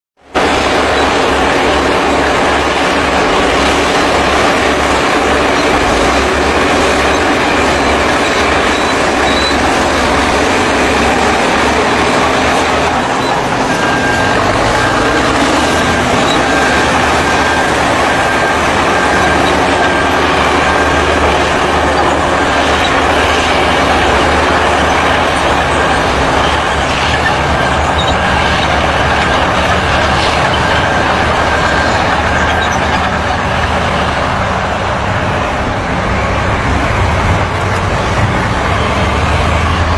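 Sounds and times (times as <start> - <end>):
heavy machinery engine drone: 0.2 - 39.9
high warning beep: 0.6 - 33.4.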